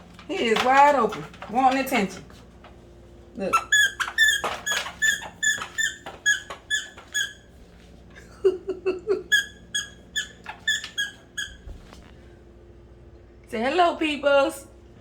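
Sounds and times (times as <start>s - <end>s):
squeaky dog toy squeaking: 3.4s - 7.4s, 9.3s - 11.7s.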